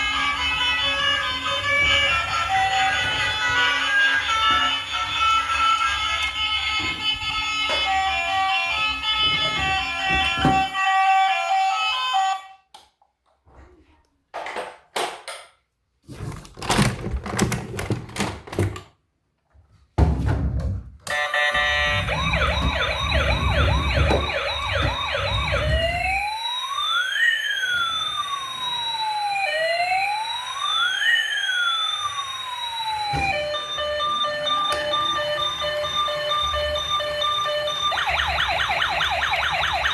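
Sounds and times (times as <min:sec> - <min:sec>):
toy electronic siren: 0:00.0 - 0:12.7, 0:21.1 - 0:39.9.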